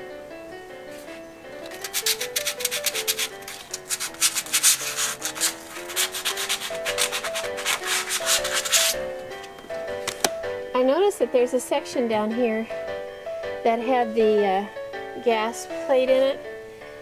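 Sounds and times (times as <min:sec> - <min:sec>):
soft background music: 0:00.0 - 0:17.0
sandpaper rasping on metal: 0:01.6 - 0:09.0.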